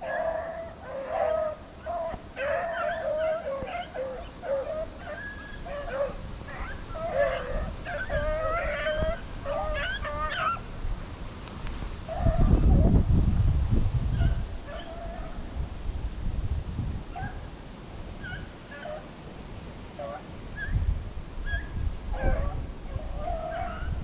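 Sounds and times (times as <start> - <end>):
hunting dogs baying and yipping: 0.0 - 10.7, 12.1 - 12.8, 14.1 - 15.5, 18.2 - 19.1, 21.5 - 24.0.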